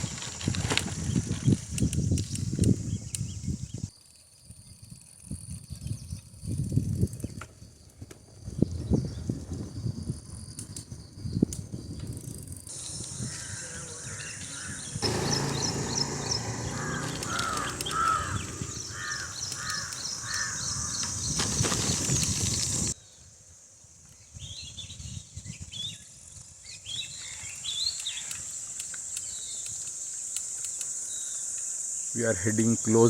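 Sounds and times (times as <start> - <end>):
wind noise: 0.0 - 3.9, 4.5 - 23.0, 24.1 - 27.3
small birds chirping: 12.7 - 23.2, 24.1 - 32.2
crows cawing: 13.2 - 21.2.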